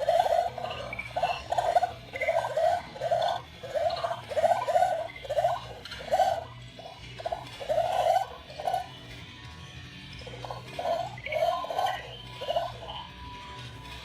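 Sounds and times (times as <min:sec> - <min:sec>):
electronic gurgling blips: 0:00.0 - 0:08.9.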